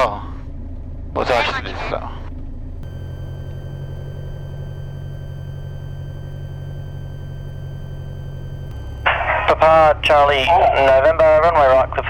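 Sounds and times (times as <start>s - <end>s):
aircraft engine drone: 2.8s - 12.0s
faint high whine: 2.8s - 12.0s.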